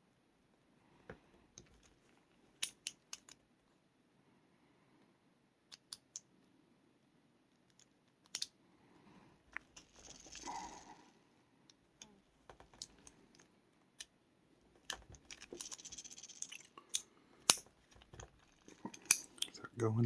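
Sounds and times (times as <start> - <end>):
small metallic clicks: 1.5 - 3.4, 5.7 - 6.3, 7.5 - 8.6, 14.8 - 19.6.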